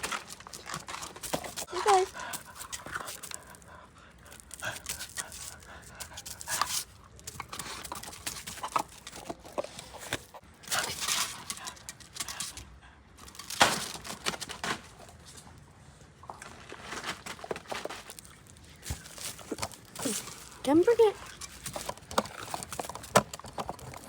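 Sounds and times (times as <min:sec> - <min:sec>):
dog rustling: 0:16.6 - 0:24.0.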